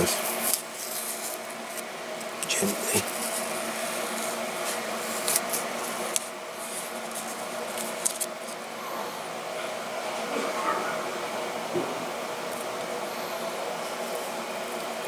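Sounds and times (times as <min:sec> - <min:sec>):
tape peeling crackles: 0:00.0 - 0:08.7
low background hum: 0:00.0 - 0:15.0.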